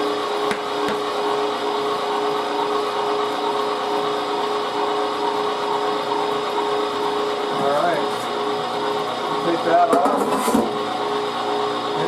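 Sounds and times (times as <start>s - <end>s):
meat grinder motor humming: 0.0s - 12.0s.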